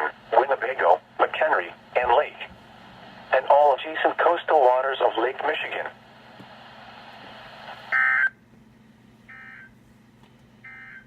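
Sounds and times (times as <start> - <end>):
radio hiss: 0.0 - 8.0.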